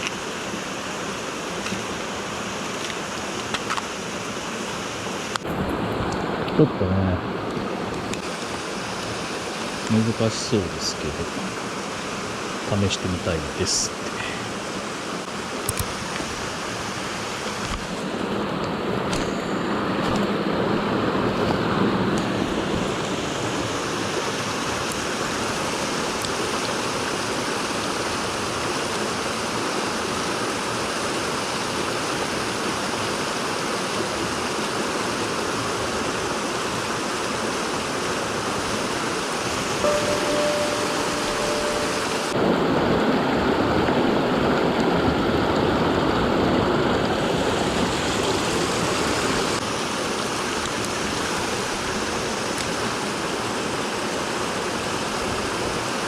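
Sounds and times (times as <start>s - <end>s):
stream water rushing: 0.0s - 56.0s
brief faint tone: 39.8s - 42.4s.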